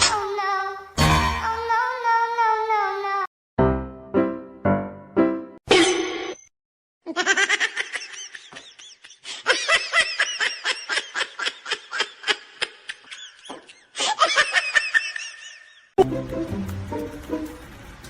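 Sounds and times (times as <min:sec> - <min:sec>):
high-pitched laughter: 0:07.1 - 0:15.9.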